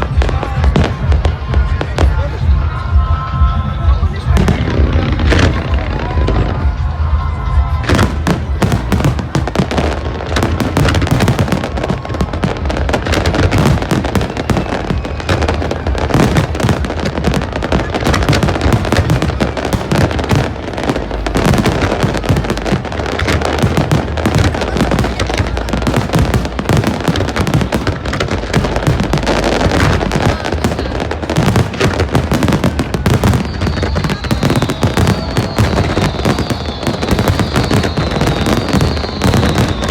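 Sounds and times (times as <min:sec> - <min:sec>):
fireworks bangs and crackling: 0:00.0 - 0:39.9
whistling firework rising: 0:31.5 - 0:39.9.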